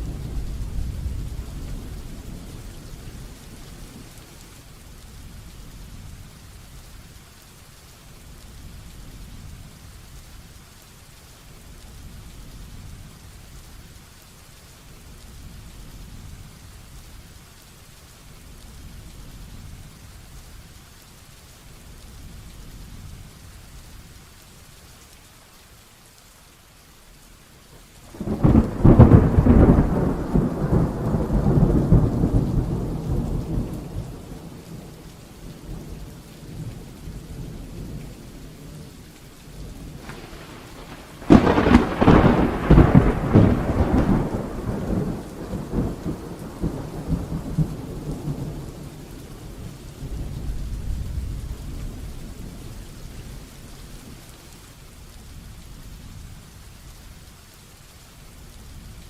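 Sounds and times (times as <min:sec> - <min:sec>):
steady rain: 0:00.0 - 0:59.0
thunder clap rumbling: 0:28.1 - 0:38.2, 0:39.7 - 0:52.8.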